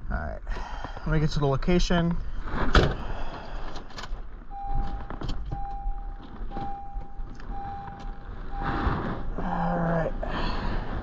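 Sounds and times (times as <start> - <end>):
vehicle warning chime beeping: 4.5 - 9.5.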